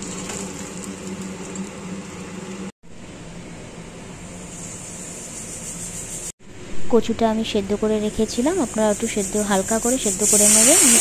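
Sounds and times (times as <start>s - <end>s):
oil sizzling as prawns fry: 9.7s - 11.0s.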